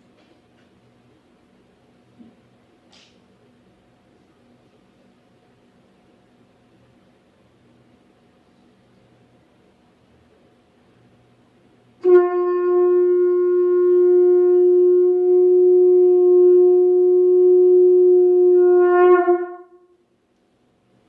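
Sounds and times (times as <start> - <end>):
conch shell blown: 12.0 - 20.1.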